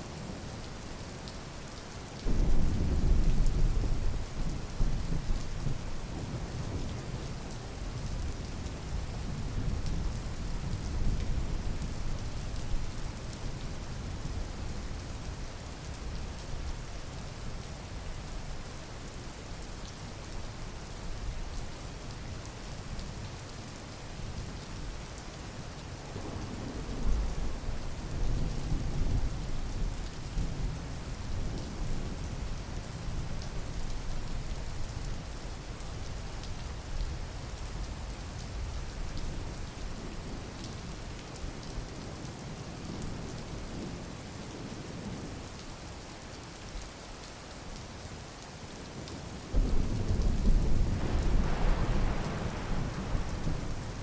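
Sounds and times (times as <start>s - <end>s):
steady rain: 0.0s - 54.0s
rolling thunder: 49.5s - 54.0s
thunder clap: 49.6s - 53.6s.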